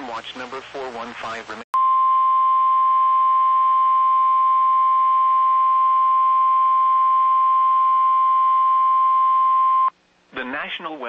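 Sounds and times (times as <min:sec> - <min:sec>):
high-pitched alarm tone: 0:01.8 - 0:09.9.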